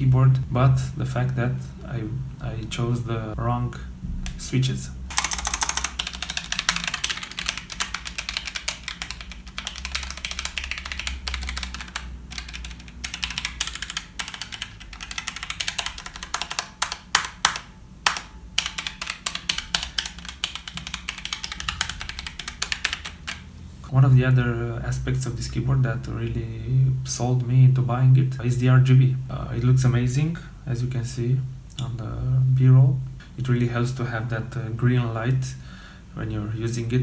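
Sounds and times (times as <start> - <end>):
typing on mechanical keyboard: 5.1 - 23.5.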